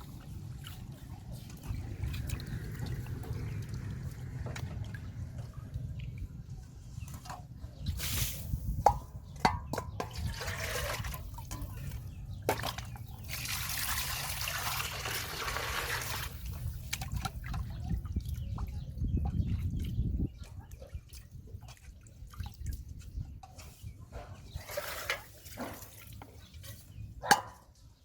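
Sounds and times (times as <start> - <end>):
water splashing and pouring: 0.0 - 6.4, 10.0 - 18.7, 24.6 - 26.4
steady low rumble: 0.0 - 9.4
water drips: 0.1 - 6.4.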